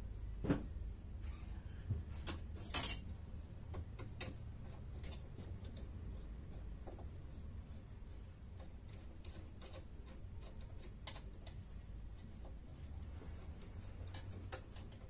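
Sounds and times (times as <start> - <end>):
metal hardware clicks and knocks: 2.2 - 7.0, 8.6 - 15.0.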